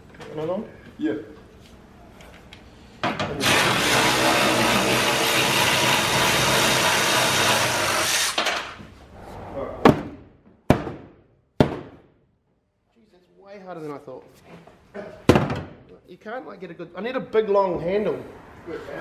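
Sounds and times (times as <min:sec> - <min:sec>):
power tool running: 0:03.4 - 0:08.4
sharp knocks: 0:09.8 - 0:12.1.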